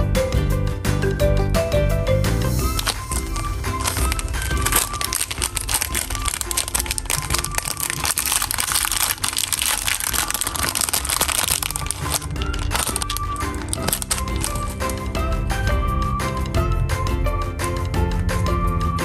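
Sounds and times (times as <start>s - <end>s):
background music: 0.0s - 19.0s
crinkling and crackling handling: 2.6s - 15.2s.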